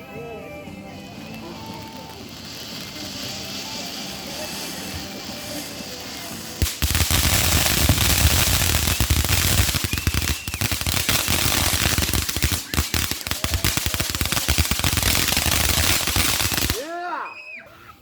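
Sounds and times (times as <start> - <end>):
firecrackers going off: 0.5 - 17.5.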